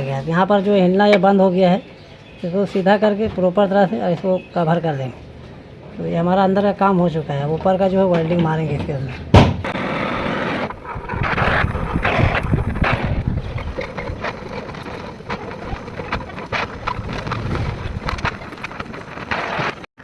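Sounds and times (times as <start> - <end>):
welding arc crackling: 9.6 - 19.8.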